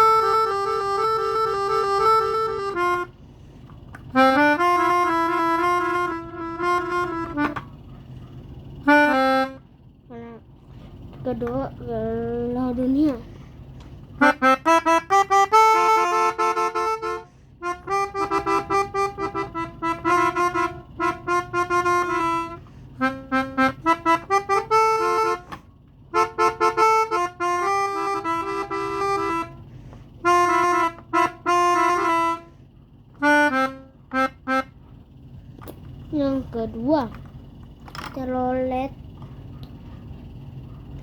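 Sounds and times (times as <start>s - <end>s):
melodica melody: 0.0s - 3.2s, 4.1s - 7.7s, 8.8s - 10.4s, 14.2s - 34.8s.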